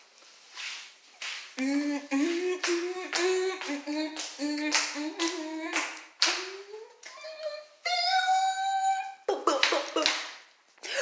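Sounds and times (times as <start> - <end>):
rhythmic hand claps: 1.2 - 7.2, 9.4 - 10.5
person singing sliding notes: 1.6 - 9.2.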